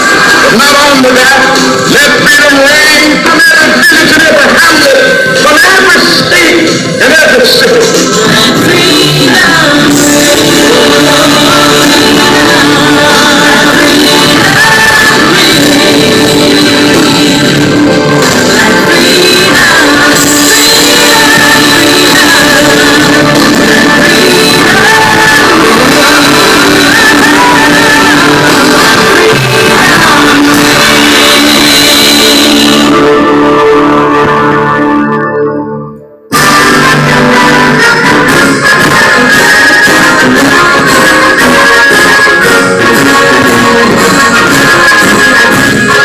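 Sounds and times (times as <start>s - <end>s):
held instrumental chords: 0.0s - 46.0s
loud music with singing: 0.0s - 46.0s.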